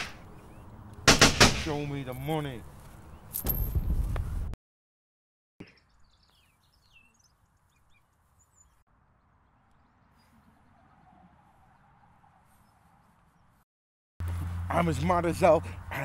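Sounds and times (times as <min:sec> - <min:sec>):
small birds chirping: 0:00.2 - 0:01.0, 0:05.6 - 0:13.6.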